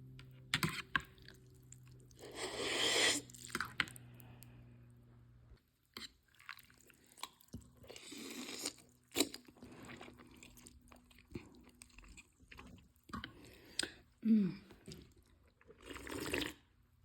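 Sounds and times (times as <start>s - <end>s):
person chewing noodles: 1.0s - 4.0s, 6.0s - 14.2s, 14.8s - 16.7s.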